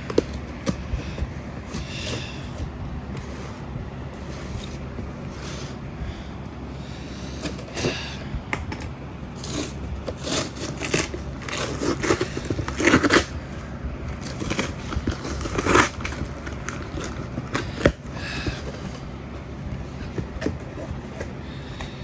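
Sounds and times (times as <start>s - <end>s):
cardboard packaging scraping and tearing: 0.0s - 5.7s, 9.3s - 22.0s
packaging rustles: 9.3s - 22.0s.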